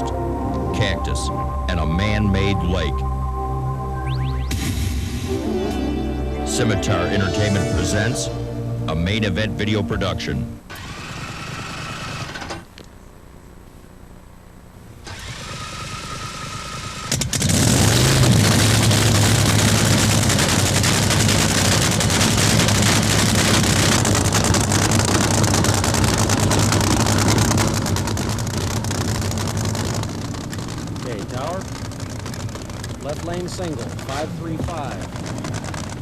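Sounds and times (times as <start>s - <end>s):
boat engine starting and idling: 6.5s - 12.7s, 15.0s - 36.0s.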